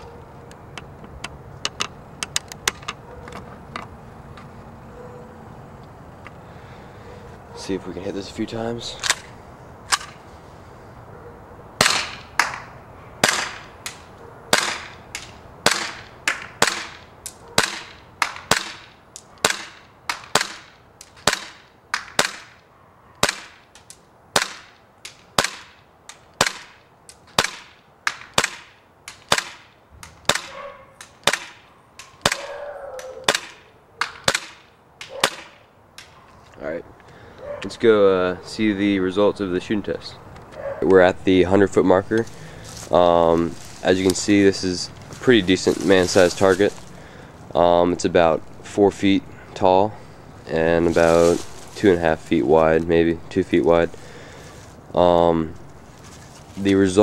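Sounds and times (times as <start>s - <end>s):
airsoft pistol shots: 11.8s - 17.0s, 17.6s - 22.6s, 23.2s - 23.6s, 24.3s - 24.8s, 25.4s - 25.8s, 26.4s - 26.8s, 27.4s - 35.7s.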